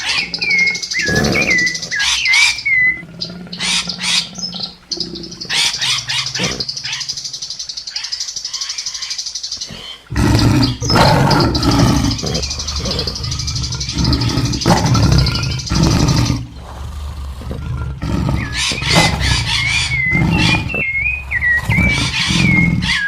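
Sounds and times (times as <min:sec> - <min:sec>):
loud rough animal call: 0:00.0 - 0:07.5, 0:09.6 - 0:23.0
whistled bird chirps: 0:00.0 - 0:09.7, 0:18.4 - 0:23.0.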